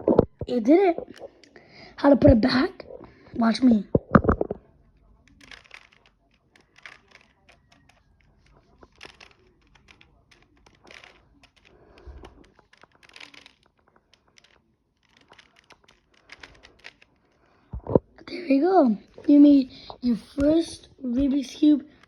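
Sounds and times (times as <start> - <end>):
plastic puzzle cube clicking: 5.2 - 17.7.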